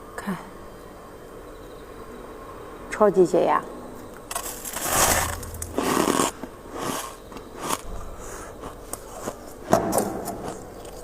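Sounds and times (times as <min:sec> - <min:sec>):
frost crunching in mouth: 0:04.3 - 0:08.0.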